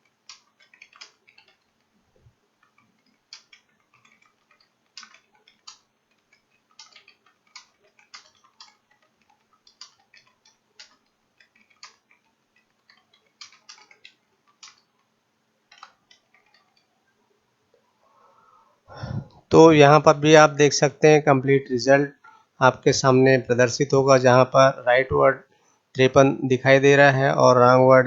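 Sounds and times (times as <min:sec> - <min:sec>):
keyboard keys clicking: 0:00.0 - 0:01.9, 0:02.6 - 0:16.9.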